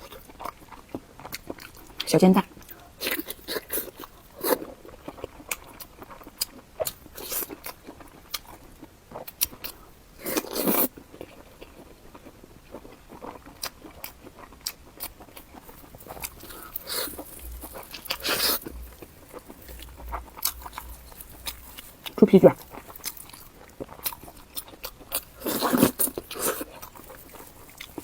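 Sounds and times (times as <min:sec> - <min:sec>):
person biting and chewing: 0:12.8 - 0:28.0.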